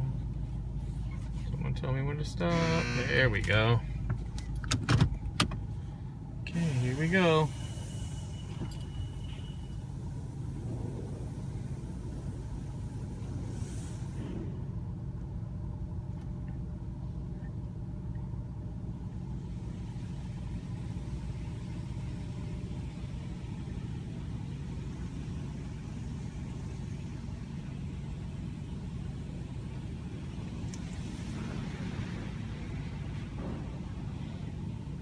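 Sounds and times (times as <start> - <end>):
car engine idling: 0.0 - 35.0
faint hiss: 6.5 - 14.7.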